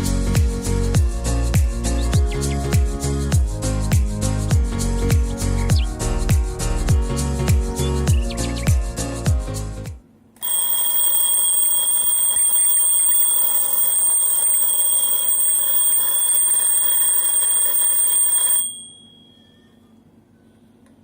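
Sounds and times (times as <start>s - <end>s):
alarm clock bells ringing: 10.4s - 19.6s.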